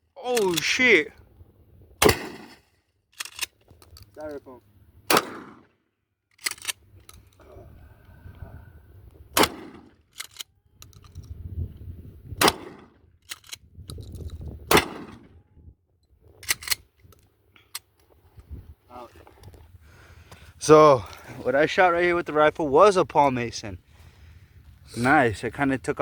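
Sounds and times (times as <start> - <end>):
gunshots: 2.0 - 2.7, 5.1 - 5.7, 9.4 - 10.0, 12.4 - 13.0, 14.7 - 15.3.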